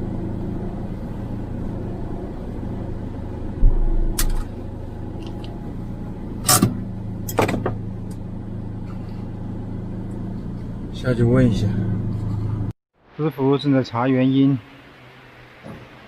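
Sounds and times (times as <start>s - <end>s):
engine humming: 0.0s - 12.8s
low thump: 3.6s - 4.4s.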